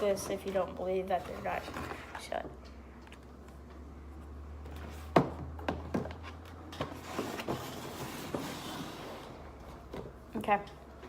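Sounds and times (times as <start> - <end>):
objects knocking and clattering: 5.0 - 8.6.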